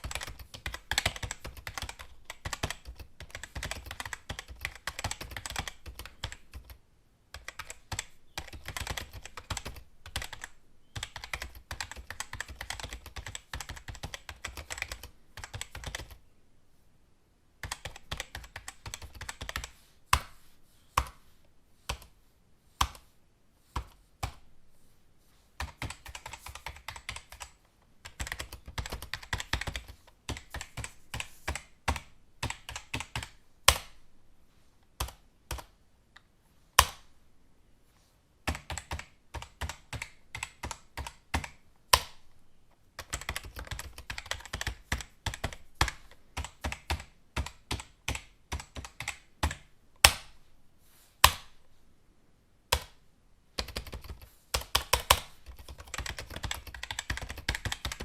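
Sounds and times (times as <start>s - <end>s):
typing on computer keyboard: 0.0s - 16.2s, 17.6s - 20.2s, 25.6s - 34.0s, 38.5s - 42.2s, 43.0s - 50.4s, 53.6s - 58.0s.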